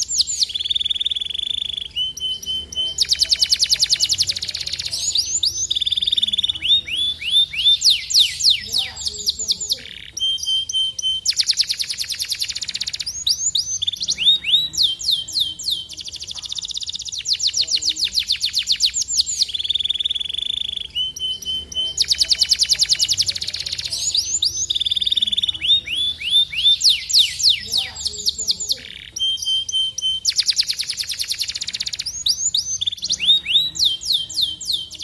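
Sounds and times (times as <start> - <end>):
canary buzzing trill: 0.0 - 35.0
canary singing: 0.0 - 35.0.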